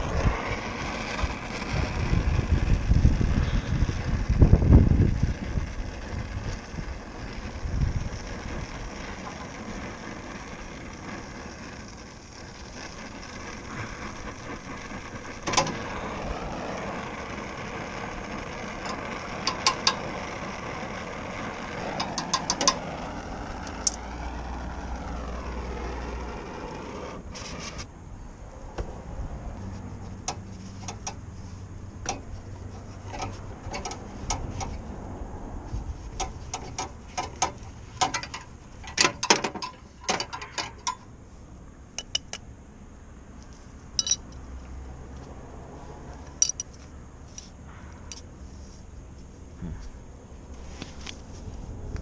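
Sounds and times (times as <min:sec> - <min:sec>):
vehicle traffic: 0:00.0 - 0:52.0.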